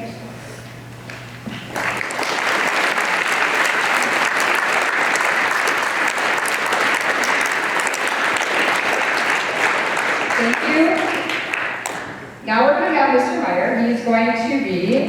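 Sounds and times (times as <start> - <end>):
audience clapping: 1.5 - 12.4.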